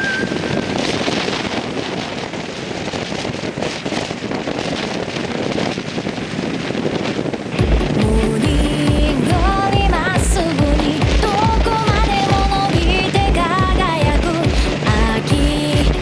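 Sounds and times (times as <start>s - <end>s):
water rushing: 0.0s - 16.0s
wind buffeting microphone: 0.0s - 16.0s.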